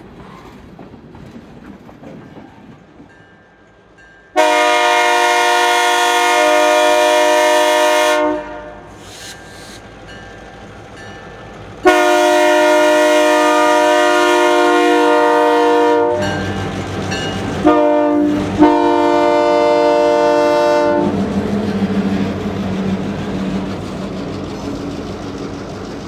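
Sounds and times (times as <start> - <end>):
locomotive engine and wheels rumbling: 0.0 - 26.0
locomotive air horn blasts: 4.4 - 9.0, 11.8 - 16.4, 17.6 - 21.2.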